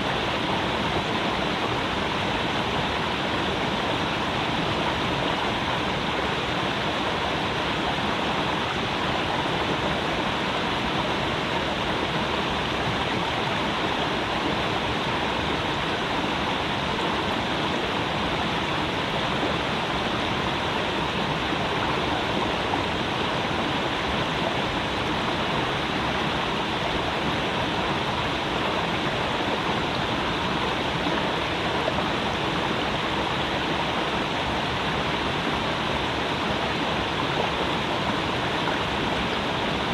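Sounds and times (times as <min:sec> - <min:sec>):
creek water rushing over rocks: 0:00.0 - 0:39.9.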